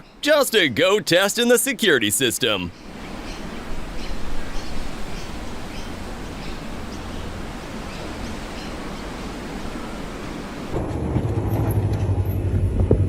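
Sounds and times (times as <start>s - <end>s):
outdoor background noise: 0.0s - 13.0s
low rumble: 10.7s - 13.0s.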